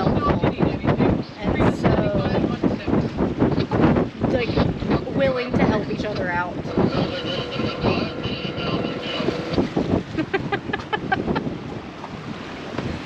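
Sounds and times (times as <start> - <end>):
gusty wind buffeting microphone: 0.0 - 13.0
faint voices: 4.3 - 9.6.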